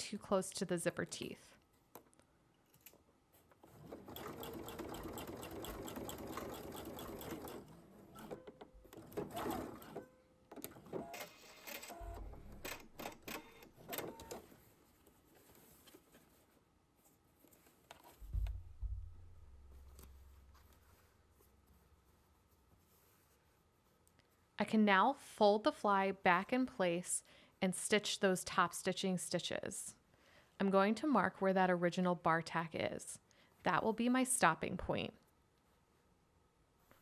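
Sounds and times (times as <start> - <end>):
sewing machine stitching: 3.6 - 14.5.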